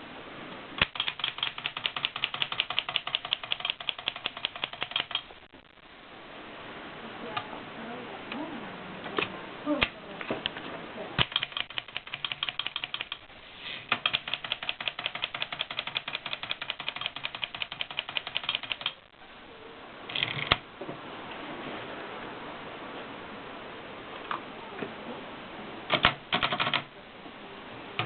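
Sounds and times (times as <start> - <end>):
typewriter clatter: 0.8 - 5.3, 11.2 - 13.3, 13.9 - 19.0, 25.9 - 26.9
typewriter keystrokes: 0.8 - 5.3, 11.2 - 13.3, 13.9 - 19.0, 25.9 - 26.9.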